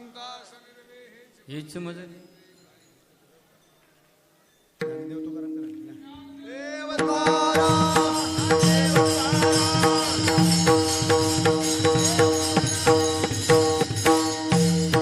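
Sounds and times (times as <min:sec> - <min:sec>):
hand drum rhythm: 0:04.8 - 0:06.0, 0:07.0 - 0:15.0
small hand cymbals: 0:07.1 - 0:15.0.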